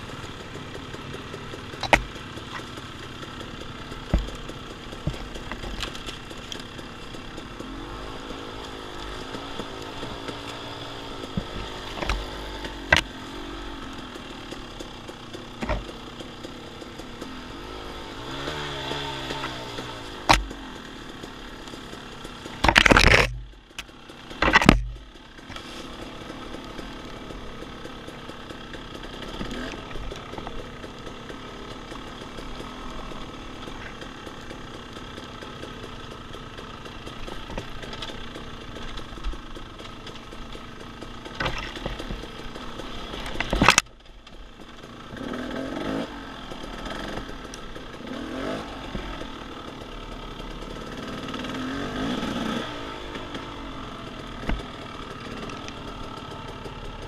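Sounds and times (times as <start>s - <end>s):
dirt bike engine surging: 0.0s - 57.0s.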